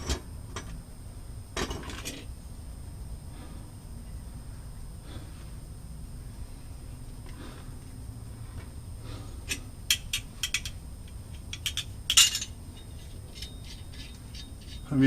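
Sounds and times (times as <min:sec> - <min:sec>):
metal parts clinking: 0:11.5 - 0:14.9.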